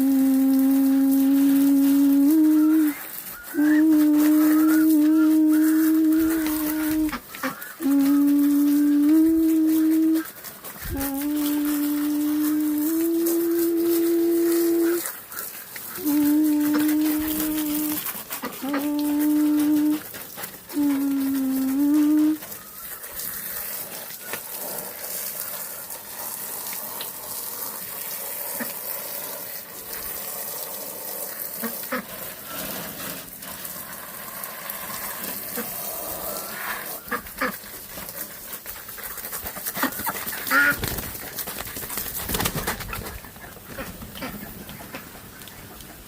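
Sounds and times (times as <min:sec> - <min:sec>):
steady hiss: 0:00.0 - 0:38.7
poultry calling: 0:02.6 - 0:07.9.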